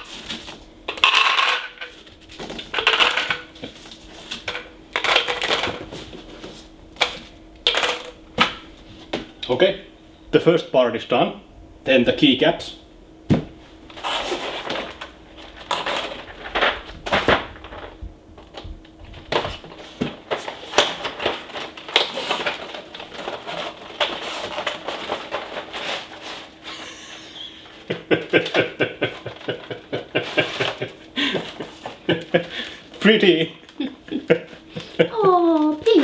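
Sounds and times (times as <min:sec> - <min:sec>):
plastic parts clattering: 0:00.0 - 0:06.1, 0:07.0 - 0:08.5, 0:14.0 - 0:18.6, 0:19.2 - 0:26.6
plastic parts clicking and rustling: 0:00.0 - 0:06.1, 0:07.0 - 0:08.5, 0:14.0 - 0:26.6.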